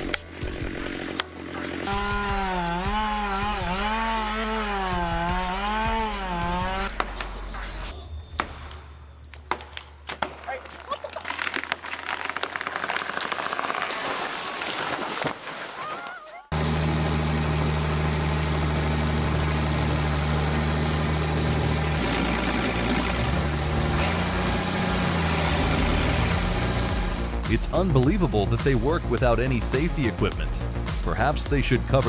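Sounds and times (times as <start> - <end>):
heavy engine running under load: 16.5 - 27.5.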